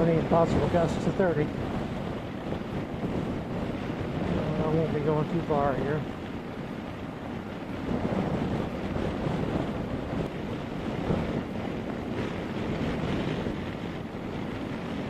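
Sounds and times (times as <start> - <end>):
wind buffeting helmet microphone: 0.0 - 15.0.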